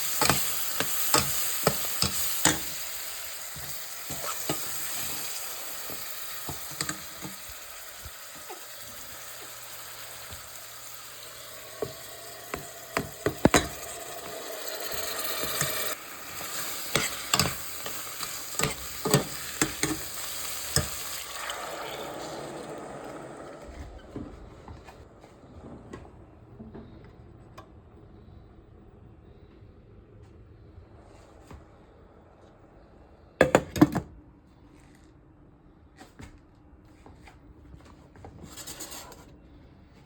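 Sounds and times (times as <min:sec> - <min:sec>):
utensil scraping a pan: 0:00.0 - 0:07.4, 0:14.9 - 0:21.2
food sizzling in a pan: 0:00.0 - 0:23.4.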